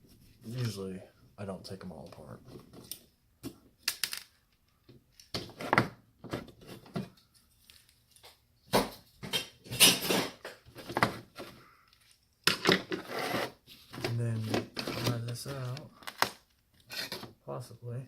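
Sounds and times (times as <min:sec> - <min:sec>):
small parts clattering: 0:02.6 - 0:08.4, 0:09.0 - 0:17.4.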